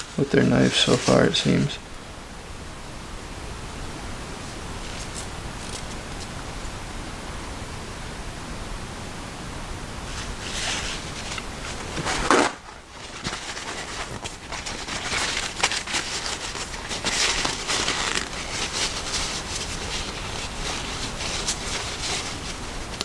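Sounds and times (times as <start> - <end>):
cloth rustling: 0.0 - 1.7, 4.4 - 6.3, 10.1 - 23.0
steady hiss: 0.0 - 23.0.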